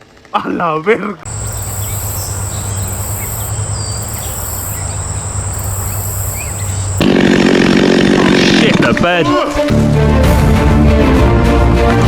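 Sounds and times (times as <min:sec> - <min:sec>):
insects trilling and buzzing: 0:01.3 - 0:07.1
low steady hum: 0:01.3 - 0:07.1.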